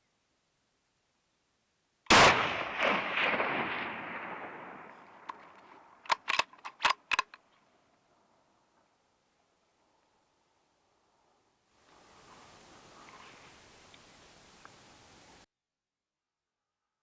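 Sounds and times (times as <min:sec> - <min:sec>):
rifle shot echoing: 0:02.1 - 0:07.4
sharp clicks: 0:04.9 - 0:07.4.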